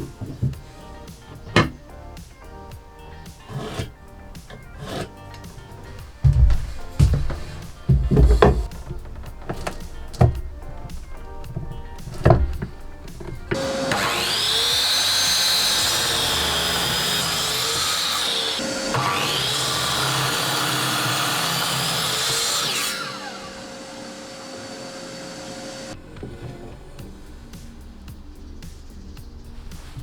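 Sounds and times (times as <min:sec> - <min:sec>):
power tool motor whining: 0:00.0 - 0:28.0.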